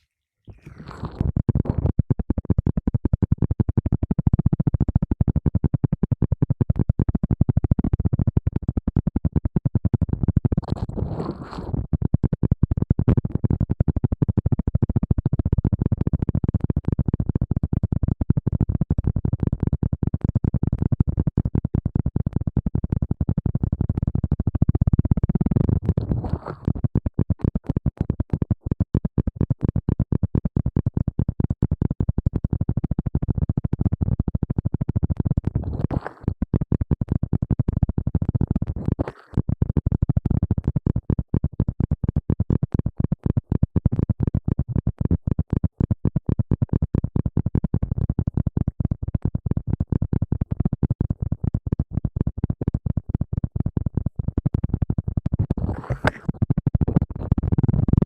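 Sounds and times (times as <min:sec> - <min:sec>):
scratching against microphone: 0:00.5 - 0:04.2, 0:09.9 - 0:12.1, 0:23.5 - 0:28.4, 0:34.6 - 0:36.4, 0:37.0 - 0:40.8, 0:46.2 - 0:58.0.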